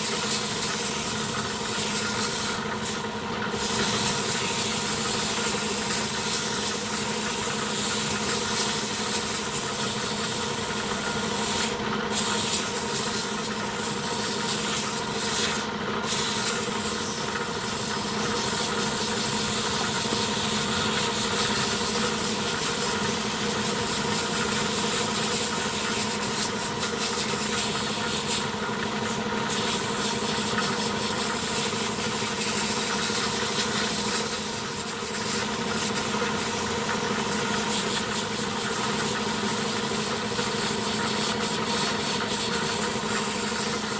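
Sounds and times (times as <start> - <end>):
compressed air hissing: 0.0 - 43.9.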